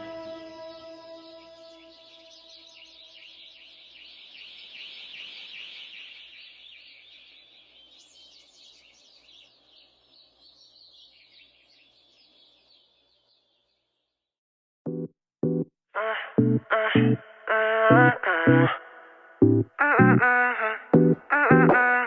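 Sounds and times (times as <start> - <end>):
birds chirping and twittering: 0.0 - 14.3.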